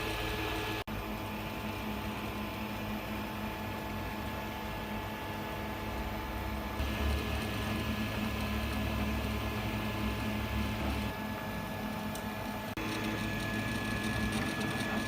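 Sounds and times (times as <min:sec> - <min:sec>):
print head whirring: 0:06.5 - 0:15.0
printer machine hum: 0:06.7 - 0:15.0.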